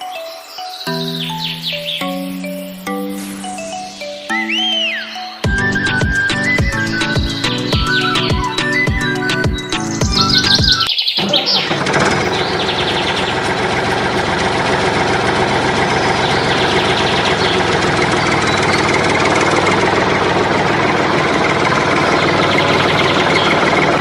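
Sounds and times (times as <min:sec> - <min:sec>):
small engine idling: 0:05.5 - 0:24.0.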